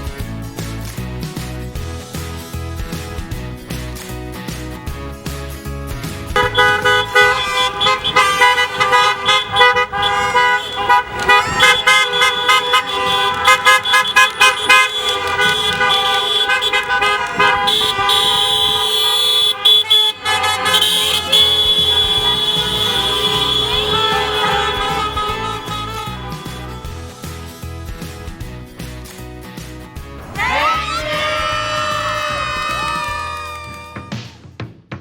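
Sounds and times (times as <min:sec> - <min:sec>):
car horns honking: 0:06.3 - 0:27.6.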